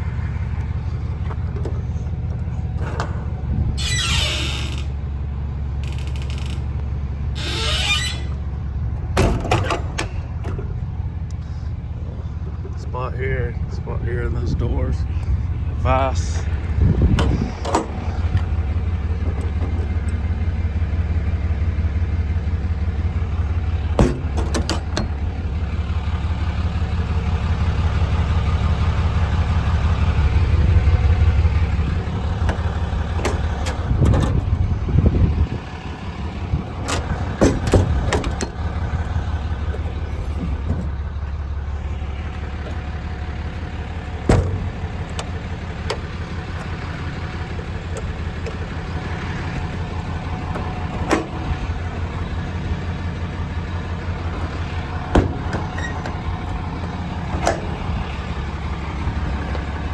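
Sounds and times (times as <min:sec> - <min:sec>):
engine idling: 0:00.0 - 0:59.9
sharp clicks and knocks: 0:23.9 - 0:25.2, 0:32.1 - 0:34.7, 0:36.8 - 0:41.4, 0:54.4 - 0:57.9.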